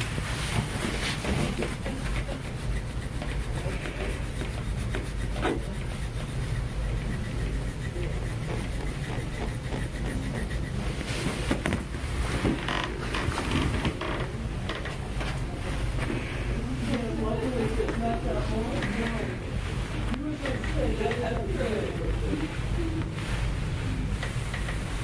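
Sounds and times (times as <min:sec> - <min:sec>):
metal tool scraping skin: 0:00.9 - 0:11.6.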